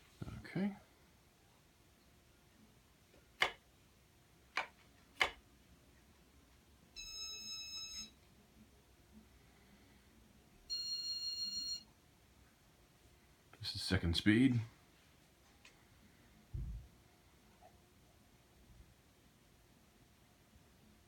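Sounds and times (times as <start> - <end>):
wall light switch clicking: 3.4 - 3.6, 4.6 - 5.4.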